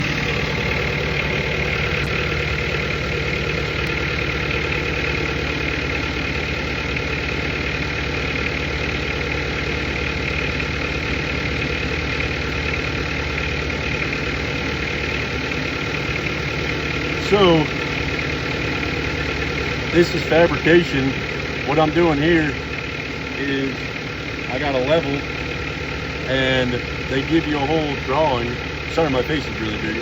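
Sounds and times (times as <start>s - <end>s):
engine idling: 0.0s - 30.0s.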